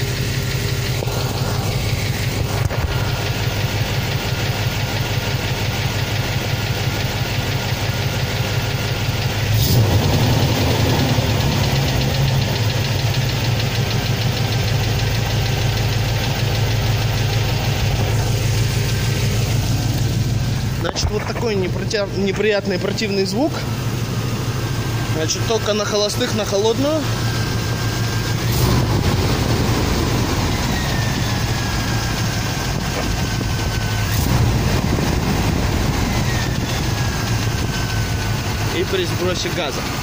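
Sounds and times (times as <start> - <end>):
engine idling with valve tick: 0.0 - 29.1.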